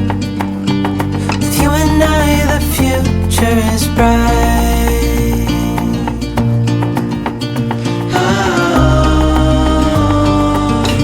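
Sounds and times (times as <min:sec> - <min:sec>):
bass line: 0:00.0 - 0:11.0
plucked guitar: 0:00.0 - 0:11.0
steady beat: 0:00.0 - 0:11.0.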